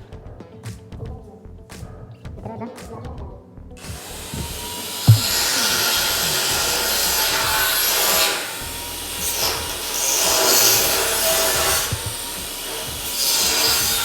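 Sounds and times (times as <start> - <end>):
abrasive tool rasping on steel: 3.8 - 14.0.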